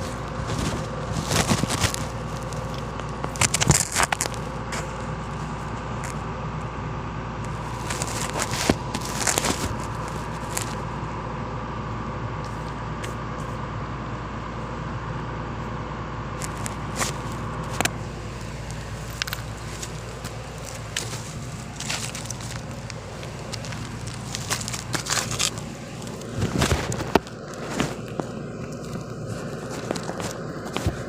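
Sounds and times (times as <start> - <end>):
excavator engine running: 0.0 - 31.0
rock breaker cracking rock: 0.5 - 4.4
faint hydraulic whine: 4.3 - 31.0.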